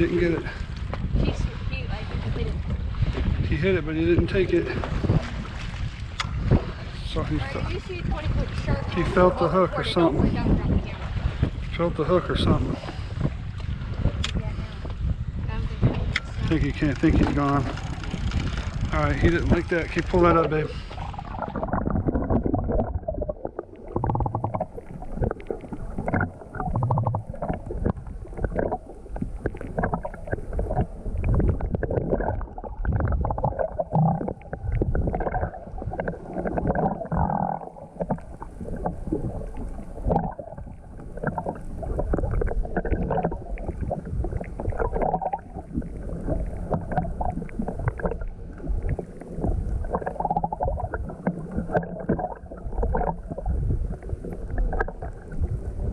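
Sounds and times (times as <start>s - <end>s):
muffled sea water sloshing: 0.0s - 55.9s.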